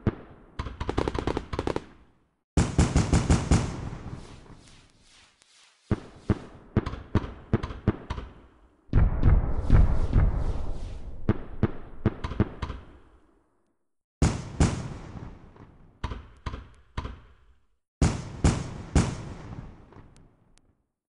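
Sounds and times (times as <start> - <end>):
fireworks bangs: 2.6 - 4.9, 5.8 - 13.2, 14.2 - 16.0, 18.0 - 20.2.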